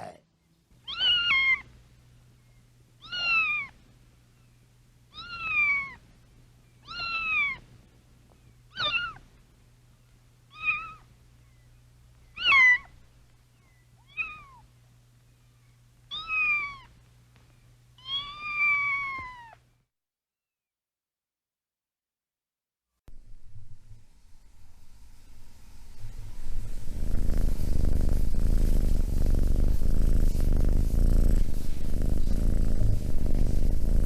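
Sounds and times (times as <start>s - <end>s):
faint low hum: 0.0s - 19.9s, 23.1s - 34.0s
cat meowing: 0.8s - 1.7s, 3.0s - 3.8s, 5.1s - 6.0s, 6.8s - 7.6s, 8.7s - 9.2s, 10.5s - 11.0s, 12.4s - 12.9s, 14.0s - 14.6s, 16.1s - 16.9s, 18.0s - 19.6s.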